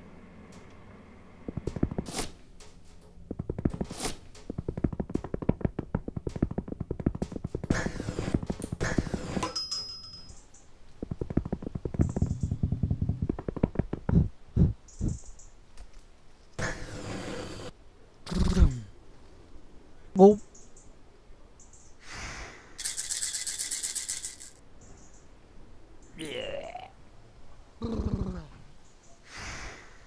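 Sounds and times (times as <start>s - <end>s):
fast tapping: 3.2s - 9.1s, 11.0s - 15.1s.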